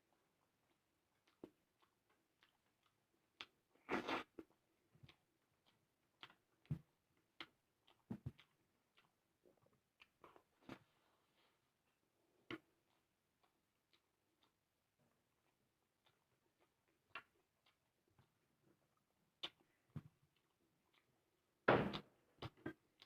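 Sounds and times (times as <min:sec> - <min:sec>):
person chewing: 0:00.4 - 0:21.4, 0:22.4 - 0:23.0
mouth clicks and smacks: 0:15.4 - 0:18.4, 0:19.4 - 0:21.1.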